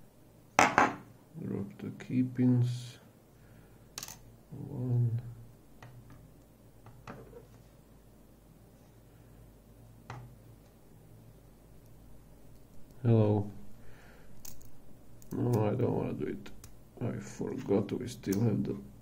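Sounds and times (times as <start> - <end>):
faint clicks of pins and tools: 14.4 - 15.7.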